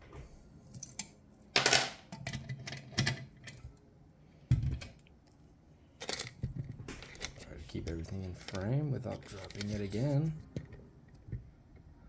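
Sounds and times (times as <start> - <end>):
metal hardware clinking: 0.7 - 2.0.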